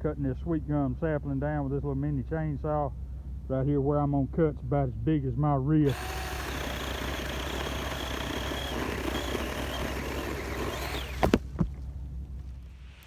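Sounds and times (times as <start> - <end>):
cordless chainsaw cutting: 5.9 - 11.4.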